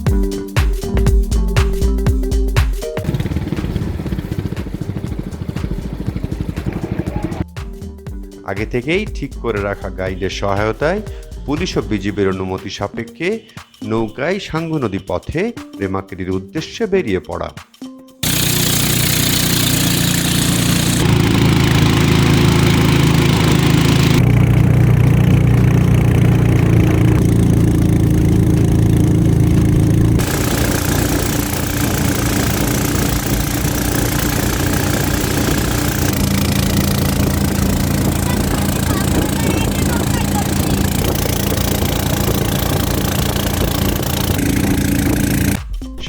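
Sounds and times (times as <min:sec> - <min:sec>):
motorboat engine droning: 0:03.0 - 0:07.4, 0:18.2 - 0:45.6.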